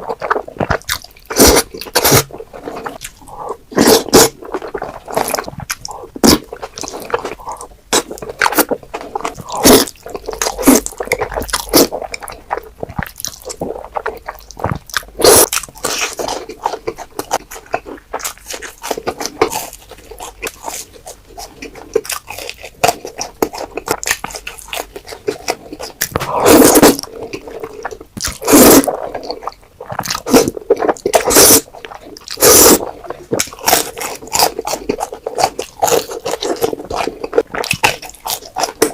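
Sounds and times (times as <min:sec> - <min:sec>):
wet chewing: 0:00.0 - 0:38.9
noodle slurping: 0:00.2 - 0:12.3, 0:26.2 - 0:37.7.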